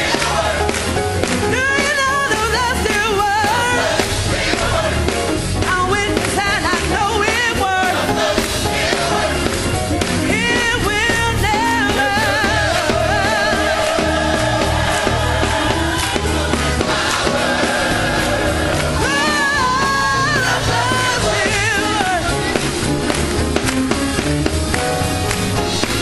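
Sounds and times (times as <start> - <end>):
gospel choir singing: 0.0 - 24.3
band bass and drums: 0.0 - 26.0.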